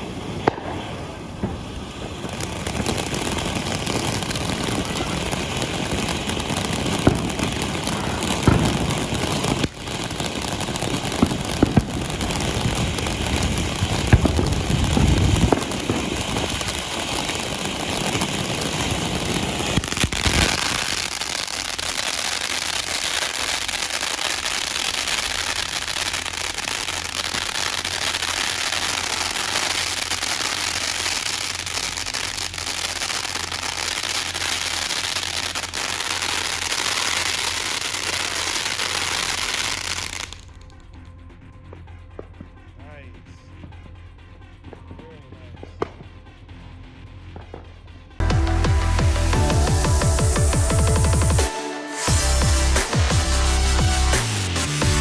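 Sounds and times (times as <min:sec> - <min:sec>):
low rumble: 0:00.0 - 0:17.8
fountain firework hissing: 0:00.0 - 0:40.8, 0:48.9 - 0:55.0
sharp firework pops: 0:00.0 - 0:41.1, 0:45.6 - 0:46.2.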